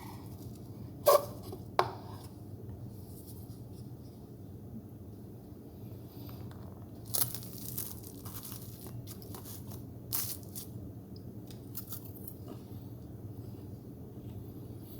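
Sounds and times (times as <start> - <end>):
steady low hum: 0.0 - 14.9
pastry crunching: 6.3 - 10.8, 11.4 - 12.6.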